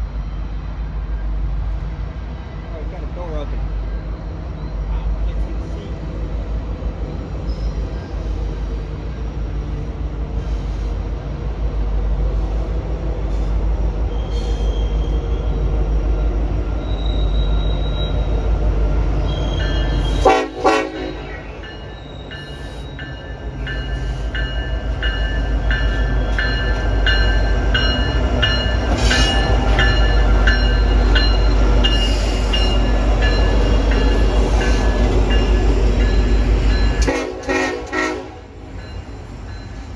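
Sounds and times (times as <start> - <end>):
diesel locomotive engine rumble: 0.0 - 39.9
train horn chord: 20.2 - 21.6, 37.0 - 38.6.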